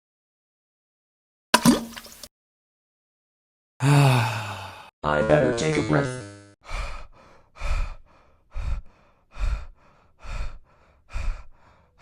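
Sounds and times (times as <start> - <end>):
person breathing heavily: 3.8 - 5.0, 6.6 - 12.0.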